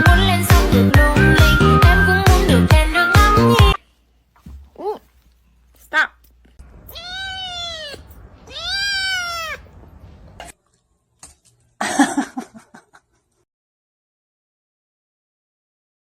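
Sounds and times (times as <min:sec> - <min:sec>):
cat meowing: 0:06.7 - 0:09.9.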